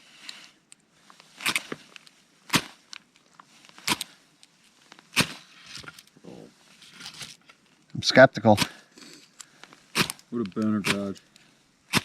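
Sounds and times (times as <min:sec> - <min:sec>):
ferro rod scraping rasps: 0:08.4 - 0:11.2.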